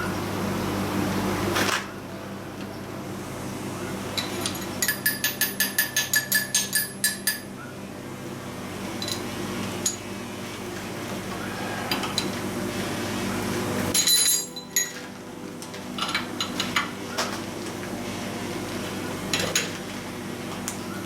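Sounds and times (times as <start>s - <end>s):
metal clinks: 13.9s - 15.0s.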